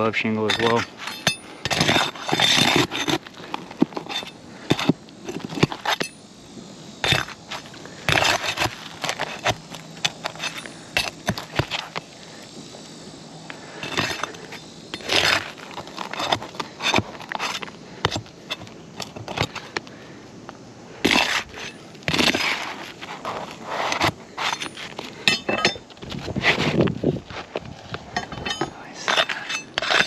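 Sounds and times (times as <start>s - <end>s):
metal tool scraping nails: 0.0s - 6.2s, 7.0s - 12.0s, 13.8s - 19.6s, 21.0s - 25.8s, 28.2s - 30.0s
shingle crackling: 0.0s - 6.2s, 7.0s - 12.4s, 13.5s - 20.1s.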